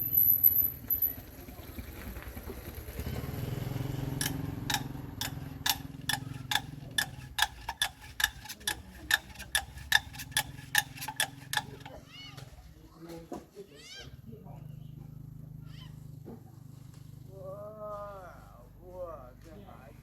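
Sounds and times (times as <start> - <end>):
metal-on-metal taps ringing: 4.2 - 12.0.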